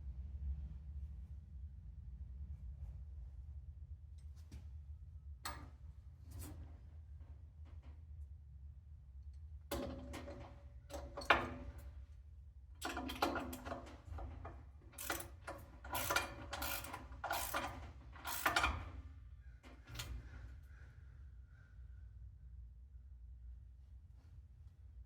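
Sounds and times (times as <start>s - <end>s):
metal parts and tools clanking: 12.8s - 18.9s.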